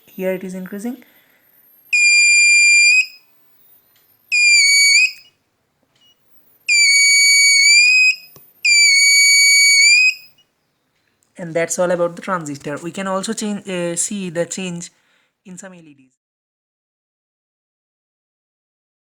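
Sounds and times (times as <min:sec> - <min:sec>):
high-pitched electronic buzzer beeps: 0:01.8 - 0:03.3, 0:04.3 - 0:05.3.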